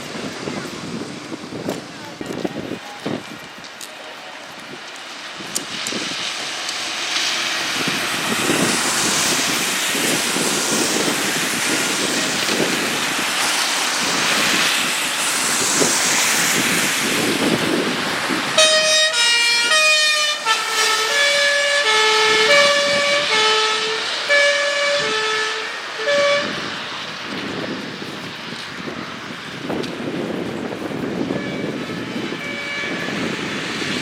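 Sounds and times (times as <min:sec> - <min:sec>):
vehicle engine and road noise: 0:00.0 - 0:34.0
fire engine two-tone horn: 0:18.5 - 0:27.1, 0:31.1 - 0:33.8.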